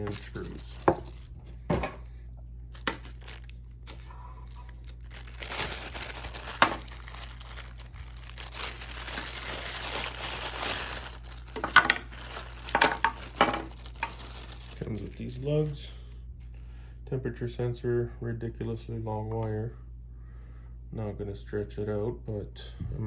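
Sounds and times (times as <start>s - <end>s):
plastic packaging crinkling: 0.0s - 15.8s.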